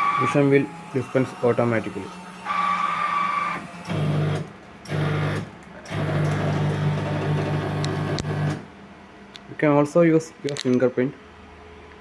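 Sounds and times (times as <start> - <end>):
vending machine motor humming: 0.0 - 8.8.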